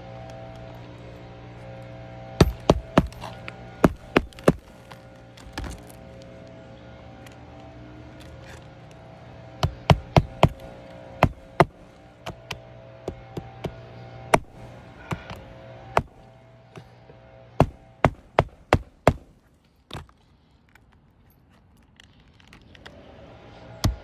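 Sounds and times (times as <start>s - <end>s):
steady low hum: 0.0s - 19.6s
sharp knocks: 2.4s - 4.7s, 17.6s - 19.3s.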